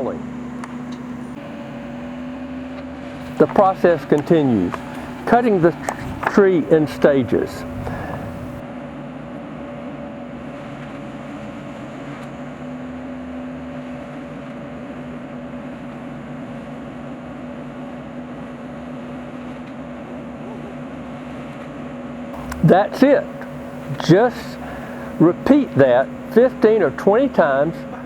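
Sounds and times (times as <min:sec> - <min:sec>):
heavy equipment engine drone: 0:00.0 - 0:08.6, 0:22.4 - 0:28.0.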